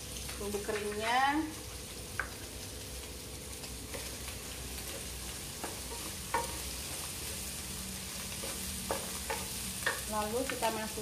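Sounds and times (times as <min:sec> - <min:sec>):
spice paste sizzling in oil: 0:00.0 - 0:11.0.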